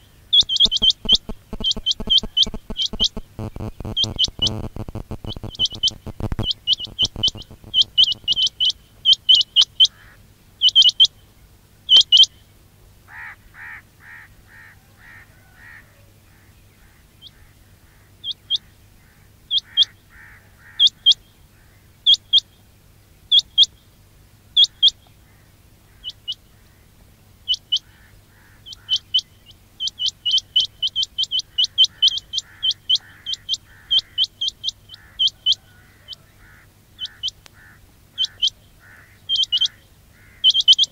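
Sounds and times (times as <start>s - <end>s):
quail chirping: 0.0s - 11.2s, 11.9s - 12.4s, 13.1s - 22.6s, 23.2s - 23.9s, 24.5s - 40.9s
faint low hum: 0.0s - 40.9s.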